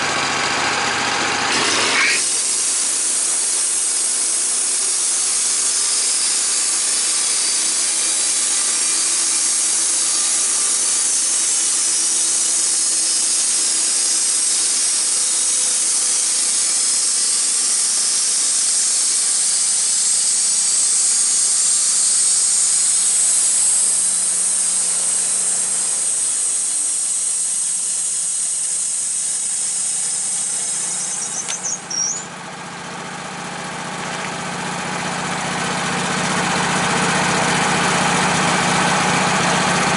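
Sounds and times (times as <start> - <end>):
sawmill engine running: 0.0 - 39.9
saw blade cutting log: 0.9 - 32.3.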